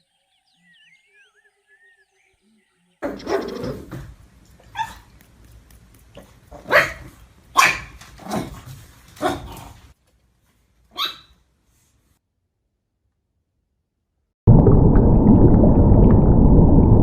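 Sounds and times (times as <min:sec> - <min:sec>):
dog barking: 0:04.7 - 0:05.1, 0:06.2 - 0:08.6, 0:09.2 - 0:09.8, 0:10.9 - 0:11.4.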